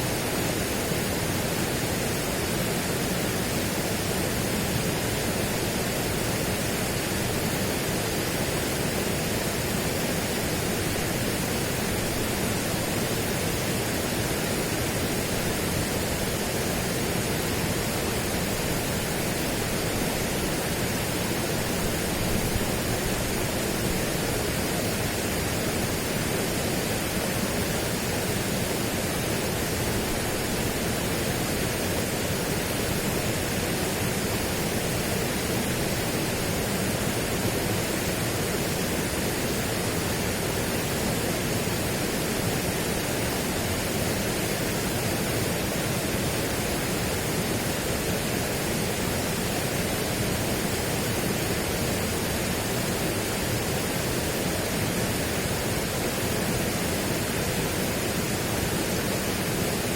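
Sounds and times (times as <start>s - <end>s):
steady rushing noise: 0.0s - 59.9s.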